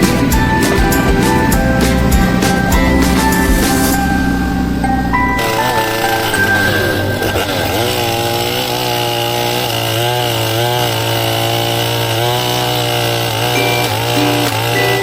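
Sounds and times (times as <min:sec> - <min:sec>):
chainsaw running: 0:00.0 - 0:15.0.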